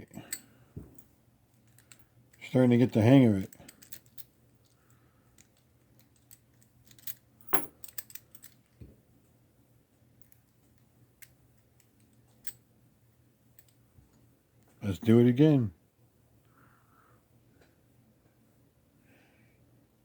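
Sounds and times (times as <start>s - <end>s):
padlock metal clicks and rattles: 1.6s - 2.1s, 3.4s - 4.8s, 5.4s - 8.8s.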